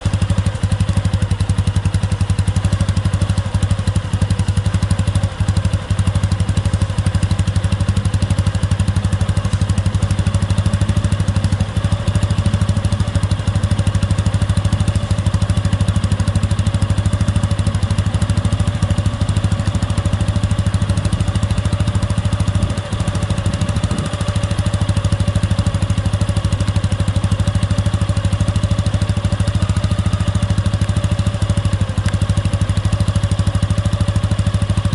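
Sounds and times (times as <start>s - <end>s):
motorcycle engine idling: 0.0s - 34.9s.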